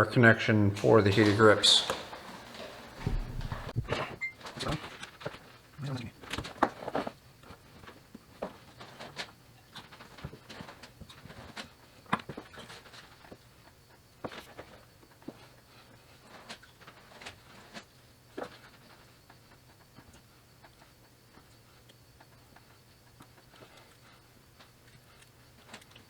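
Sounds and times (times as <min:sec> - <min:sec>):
faint steady hum: 0:00.0 - 0:04.4.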